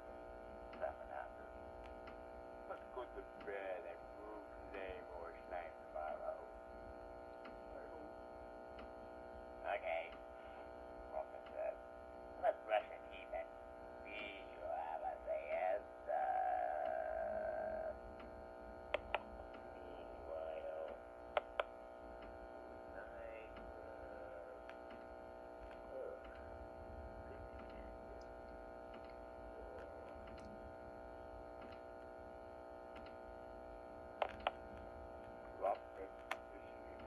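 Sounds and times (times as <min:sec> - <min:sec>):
faint voice: 0:00.0 - 0:01.6, 0:02.7 - 0:06.8, 0:09.6 - 0:11.8, 0:12.4 - 0:18.2, 0:19.0 - 0:21.3, 0:22.8 - 0:25.1, 0:25.7 - 0:28.1, 0:29.3 - 0:30.7, 0:35.5 - 0:37.0
steady electrical hum: 0:00.0 - 0:37.0
sharp clicks: 0:18.2 - 0:19.7, 0:20.9 - 0:22.4, 0:34.2 - 0:35.5, 0:36.1 - 0:37.0.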